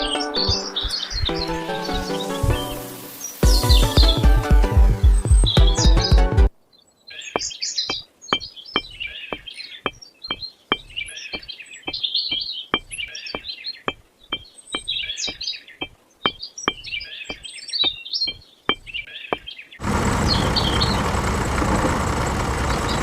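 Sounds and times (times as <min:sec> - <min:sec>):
birds chirping: 0:00.0 - 0:23.0
sharp knocks: 0:07.4 - 0:19.5.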